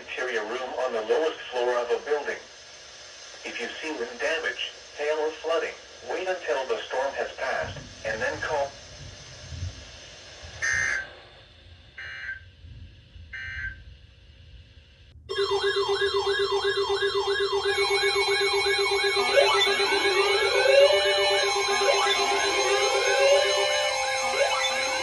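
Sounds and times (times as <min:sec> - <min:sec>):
pulsing low alarm tone: 0:10.5 - 0:14.7, 0:15.3 - 0:25.0
electronic data tone bursts: 0:15.3 - 0:25.0
rising siren wails: 0:15.3 - 0:25.0
yelping siren: 0:15.3 - 0:25.0.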